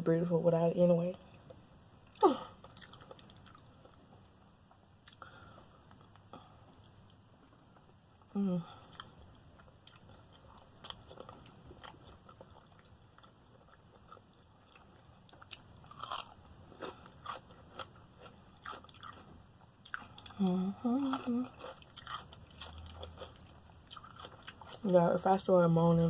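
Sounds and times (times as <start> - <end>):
crunchy chewing: 2.6 - 4.3, 8.8 - 25.0.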